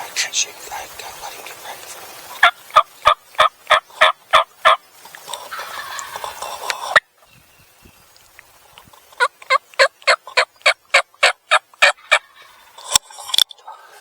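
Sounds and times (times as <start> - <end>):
wild turkey calling: 1.0 - 7.3, 8.8 - 13.0.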